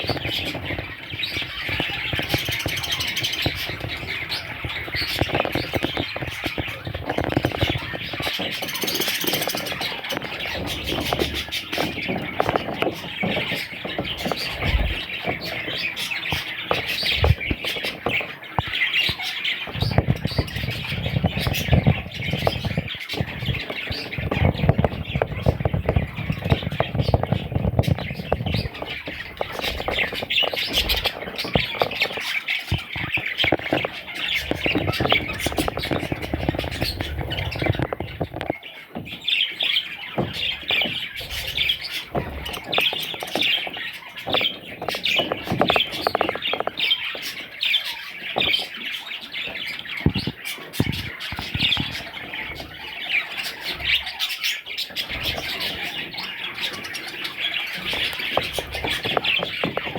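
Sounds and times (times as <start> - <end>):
knocks and thumps: 0.0 - 39.2, 40.2 - 47.5, 50.0 - 52.8, 57.7 - 59.9
budgerigars chattering and squawking: 0.0 - 59.9.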